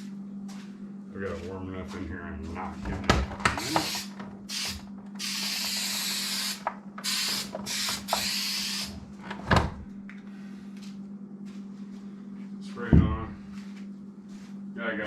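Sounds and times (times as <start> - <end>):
aerosol can hissing: 3.6 - 8.9.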